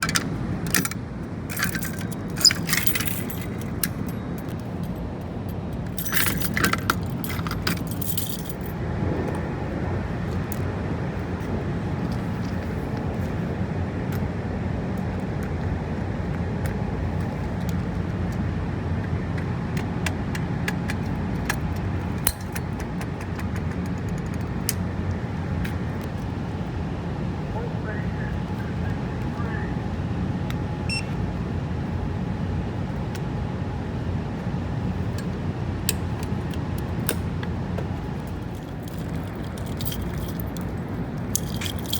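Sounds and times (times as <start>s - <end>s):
steady low rumble: 0.0s - 41.9s
metallic jingling: 1.5s - 8.8s, 38.6s - 41.9s.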